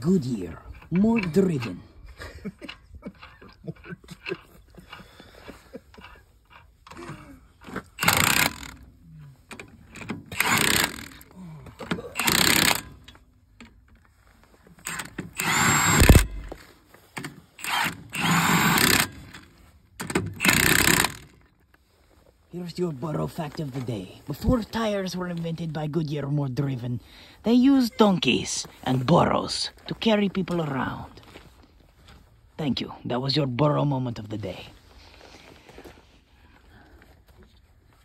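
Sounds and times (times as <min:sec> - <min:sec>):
power tool spinning lug nuts: 0:07.6 - 0:13.7, 0:14.8 - 0:21.5.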